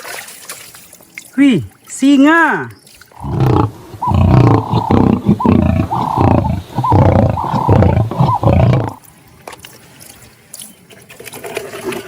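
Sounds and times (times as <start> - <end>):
lion roaring: 3.2 - 9.0.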